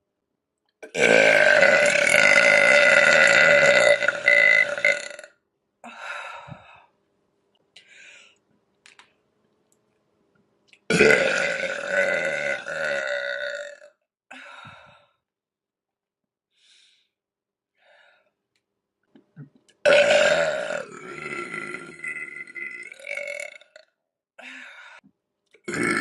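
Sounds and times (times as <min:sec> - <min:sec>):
woman burping loudly: 0:00.8 - 0:05.4, 0:10.9 - 0:13.9, 0:19.8 - 0:23.9, 0:25.6 - 0:26.0.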